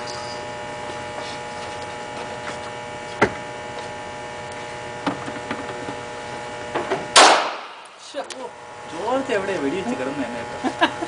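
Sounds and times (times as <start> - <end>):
electrical hum: 0.0 - 11.0
sharp crack: 7.1 - 8.0.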